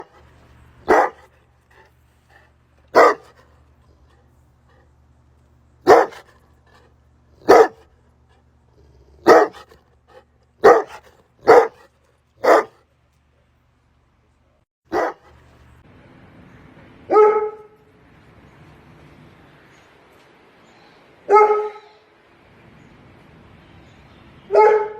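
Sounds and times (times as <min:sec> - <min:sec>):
dog barking: 0:00.8 - 0:01.3, 0:02.9 - 0:03.4, 0:05.8 - 0:06.3, 0:07.4 - 0:07.9, 0:09.2 - 0:09.8, 0:10.6 - 0:12.8, 0:14.9 - 0:15.3, 0:21.3 - 0:21.9.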